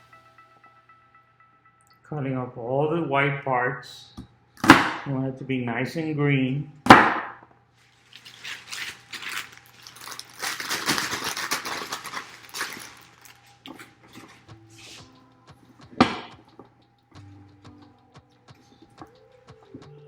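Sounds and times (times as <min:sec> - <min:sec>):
sharp knock: 0:15.9 - 0:16.4.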